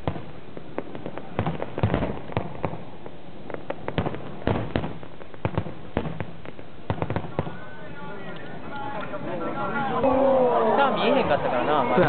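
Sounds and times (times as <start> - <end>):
aerial fireworks bursting: 0.0 - 8.0.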